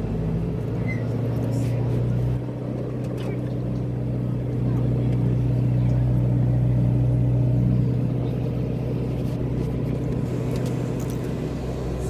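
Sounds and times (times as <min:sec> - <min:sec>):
boat engine droning: 0:00.0 - 0:12.0.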